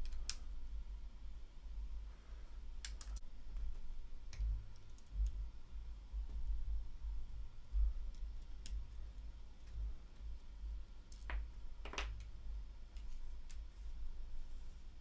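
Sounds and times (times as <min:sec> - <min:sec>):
small plastic parts clicking: 0:00.0 - 0:00.4, 0:02.8 - 0:03.2.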